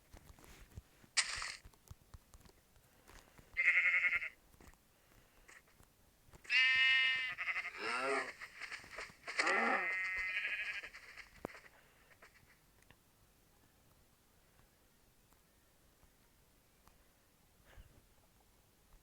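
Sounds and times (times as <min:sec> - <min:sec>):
voice giving bleat-like calls: 0:03.6 - 0:04.4, 0:06.4 - 0:11.6.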